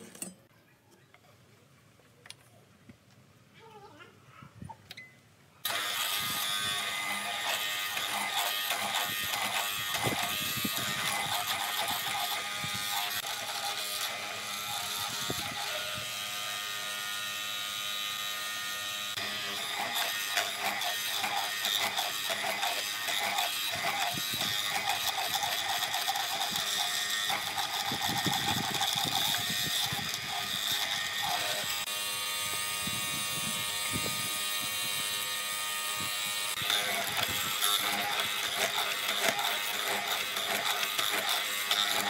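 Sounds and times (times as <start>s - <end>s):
small power tool motor running: 5.6s - 42.0s.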